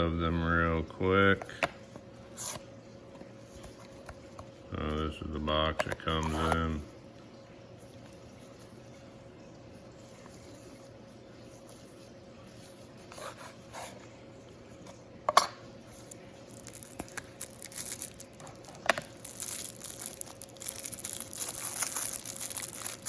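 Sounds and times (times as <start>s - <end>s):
wrapping crinkling and rustling: 15.8s - 23.0s.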